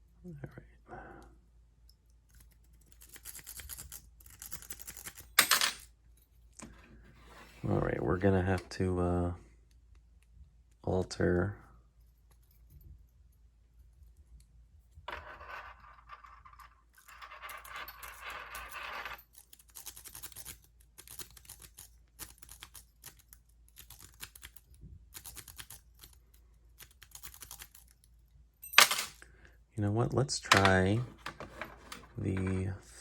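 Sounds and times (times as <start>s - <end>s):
metal tools scraping: 30.4s - 33.0s.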